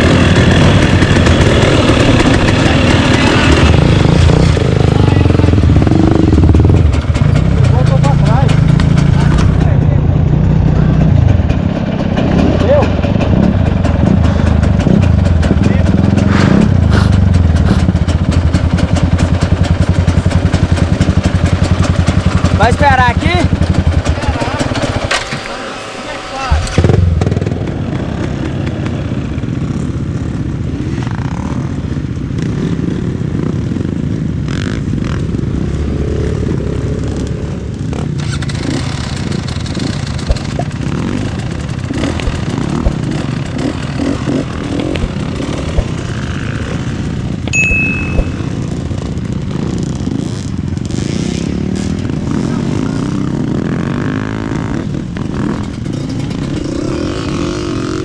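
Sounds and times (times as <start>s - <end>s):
motorcycle engine revving: 0.0s - 58.0s
sharp knocks and clatters: 5.9s - 22.6s, 37.8s - 46.6s.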